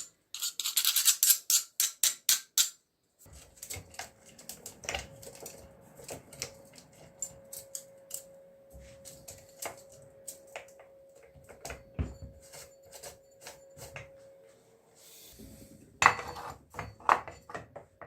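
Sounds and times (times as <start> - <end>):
metallic clicks of hand tools: 0.0 - 2.8.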